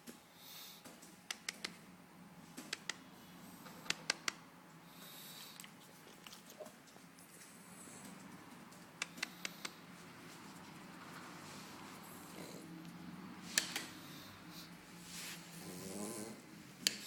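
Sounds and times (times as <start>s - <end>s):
sharp clicks: 2.6s - 3.0s
dog snoring: 12.0s - 12.8s, 14.0s - 16.5s.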